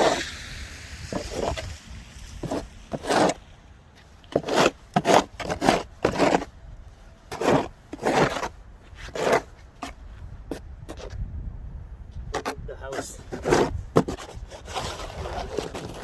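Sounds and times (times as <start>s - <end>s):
snow crunching: 0.0s - 10.0s.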